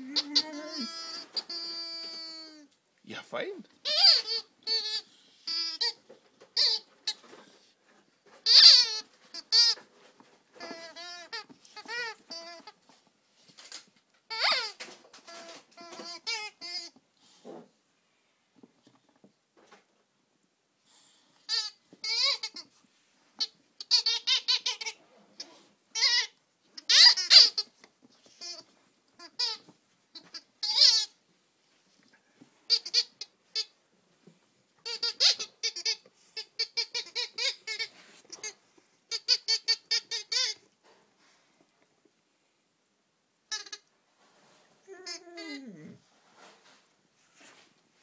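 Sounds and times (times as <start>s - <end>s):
rubber squeaky toy squeaking: 0.0s - 2.7s, 3.8s - 7.4s, 8.4s - 9.9s, 10.6s - 12.8s, 14.3s - 17.0s, 21.5s - 22.8s, 23.4s - 31.2s, 32.7s - 33.7s, 34.8s - 40.6s, 43.5s - 43.9s, 44.9s - 46.0s.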